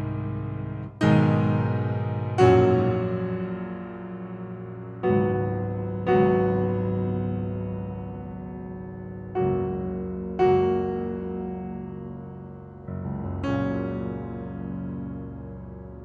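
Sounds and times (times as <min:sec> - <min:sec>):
piano chords: 0:00.0 - 0:16.0.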